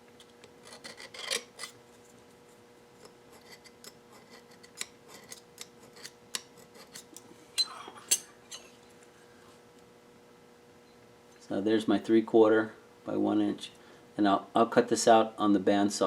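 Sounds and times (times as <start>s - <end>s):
faint steady hum: 0.0s - 16.0s
steel scribe scratching brass: 0.6s - 1.8s, 3.3s - 8.6s.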